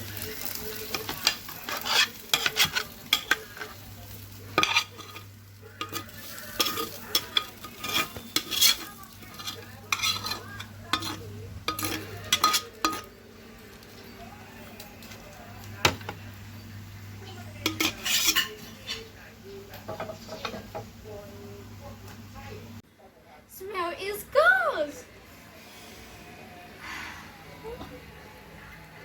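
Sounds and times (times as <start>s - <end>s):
utensil scraping in a pan: 0.0s - 16.2s, 17.2s - 20.8s
faint sizzle: 0.0s - 29.0s.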